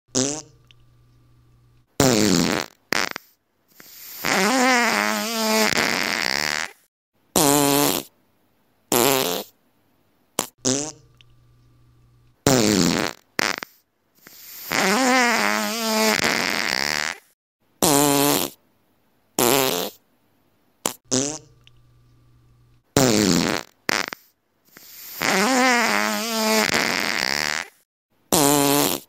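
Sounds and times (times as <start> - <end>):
farts: 0.1 - 0.8, 2.0 - 8.1, 8.9 - 9.5, 10.4 - 11.4, 12.4 - 18.6, 19.4 - 20.0, 20.8 - 21.8, 23.0 - 29.0.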